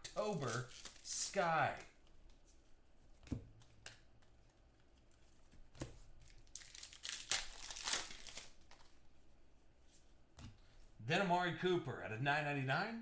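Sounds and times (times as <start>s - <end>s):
wrappers tearing and crinkling: 0.1s - 1.3s, 6.3s - 8.8s.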